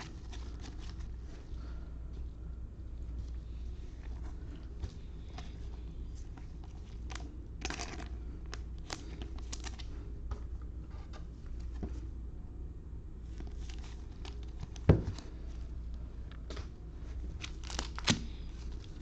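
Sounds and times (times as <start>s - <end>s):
packaging crinkle: 6.2s - 9.9s, 13.3s - 15.3s, 17.1s - 19.0s.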